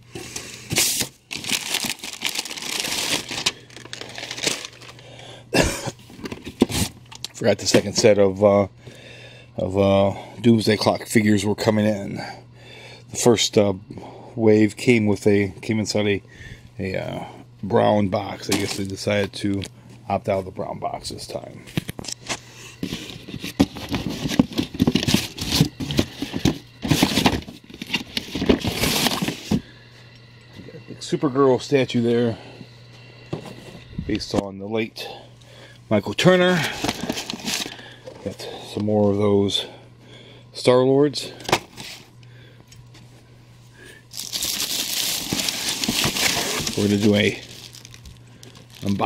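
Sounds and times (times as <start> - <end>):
packaging rustling and knocks: 0.7 - 5.0, 22.8 - 29.6, 36.7 - 37.8, 44.2 - 49.0.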